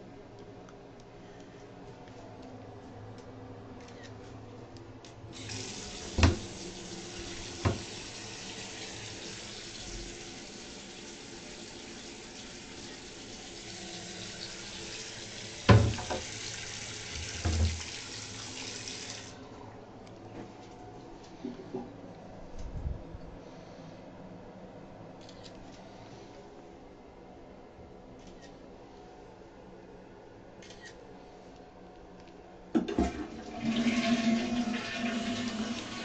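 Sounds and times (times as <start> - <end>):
faucet water running: 5.3 - 19.4, 33.3 - 36.0.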